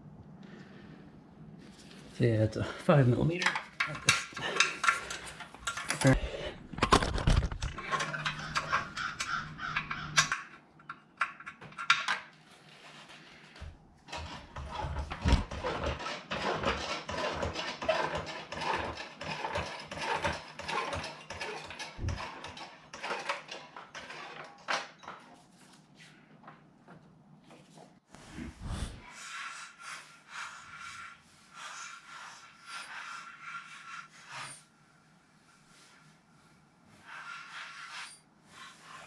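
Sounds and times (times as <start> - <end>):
metal tools clinking: 3.4 - 6.2.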